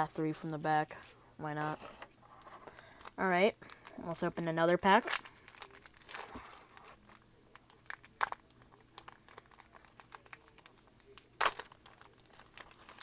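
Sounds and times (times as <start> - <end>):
foil wrapper crinkling and tearing: 2.6 - 13.0.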